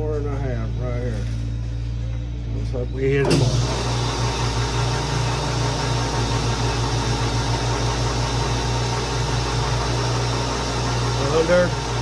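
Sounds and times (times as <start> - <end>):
metal lathe fluttering hum: 2.9 - 12.0.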